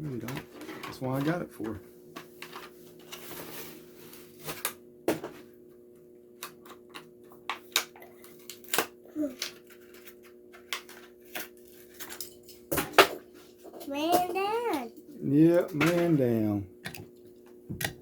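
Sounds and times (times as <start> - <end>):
plastic packaging crackling and snapping: 7.7 - 11.5.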